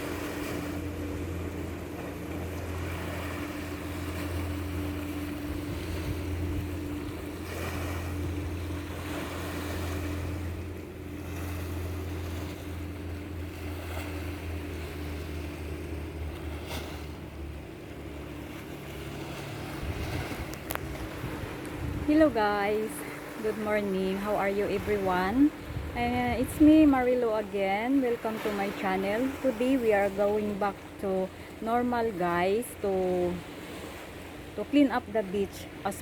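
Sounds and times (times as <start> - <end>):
low engine drone: 0.0 - 36.0
wind or surf noise: 0.0 - 36.0.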